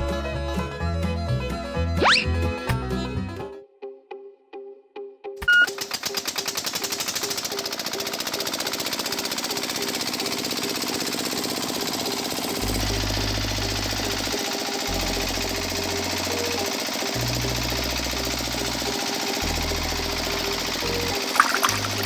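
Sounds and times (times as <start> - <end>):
rapid mechanical clatter: 5.7 - 22.0.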